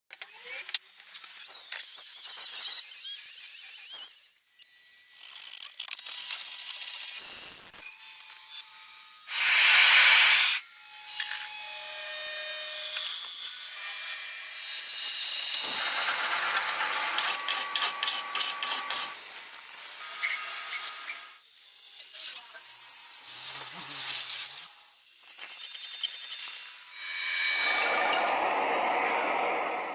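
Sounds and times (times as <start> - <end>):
loud hissing burst: 9.3 - 10.6, 27.3 - 29.9
quick rasping strokes: 9.3 - 10.6.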